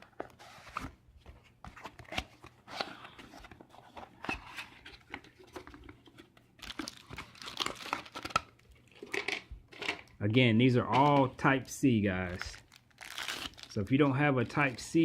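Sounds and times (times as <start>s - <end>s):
packaging rustling and crinkling: 0.0s - 9.9s, 12.2s - 15.0s.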